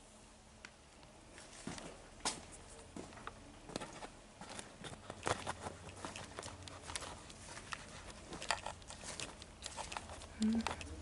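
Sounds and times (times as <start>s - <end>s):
footsteps tapping and scuffing: 1.4s - 9.8s.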